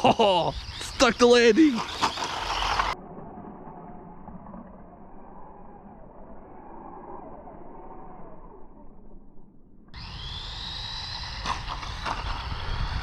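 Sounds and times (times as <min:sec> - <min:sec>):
electric motor whining: 0:01.8 - 0:03.0, 0:10.0 - 0:13.0.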